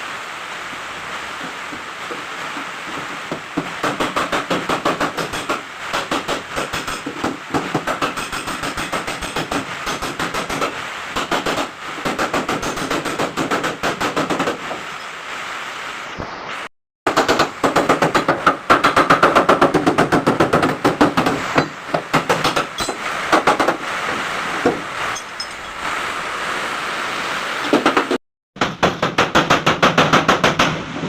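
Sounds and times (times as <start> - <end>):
hammering on sheet metal: 1.7 - 14.8, 17.1 - 23.9, 27.8 - 31.0.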